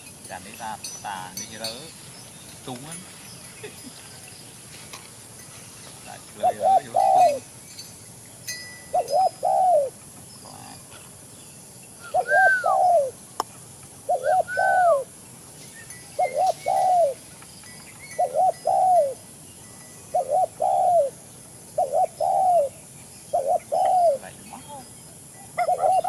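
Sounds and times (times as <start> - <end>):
dove cooing: 6.1 - 7.6, 8.9 - 11.2, 12.0 - 13.3, 14.0 - 15.2, 16.2 - 17.3, 18.1 - 19.4, 20.1 - 26.0.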